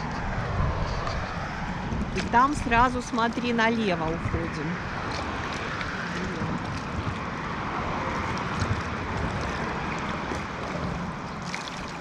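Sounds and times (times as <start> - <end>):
river current rushing: 0.0 - 12.0
wind rumbling on microphone: 0.0 - 12.0.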